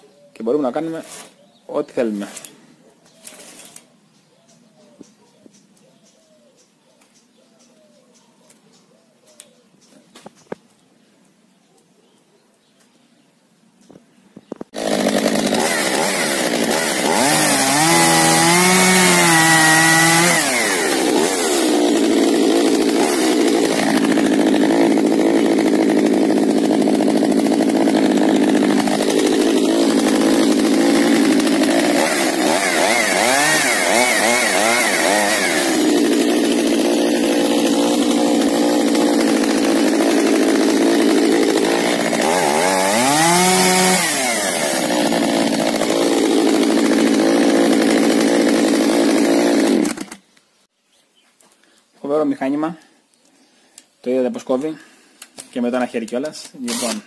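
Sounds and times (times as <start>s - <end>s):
chainsaw revving and cutting wood: 14.8s - 50.2s, 56.1s - 57.0s.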